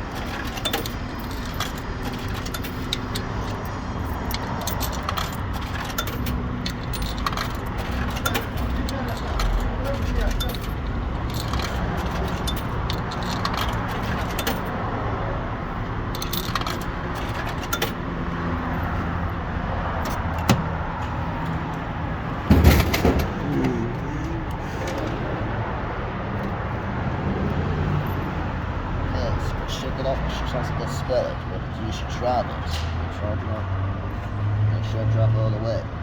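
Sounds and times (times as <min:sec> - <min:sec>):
road traffic rumble: 0:00.0 - 0:36.0
metallic clicks: 0:00.1 - 0:14.8, 0:16.1 - 0:18.0
can dropping in vending machine: 0:22.5 - 0:23.4.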